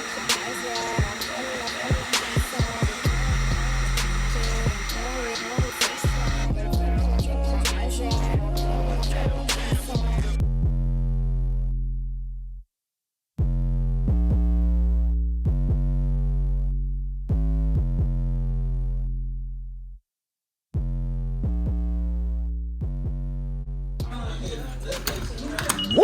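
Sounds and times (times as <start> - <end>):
electronic hip-hop music: 0.0 - 10.4, 24.0 - 26.0.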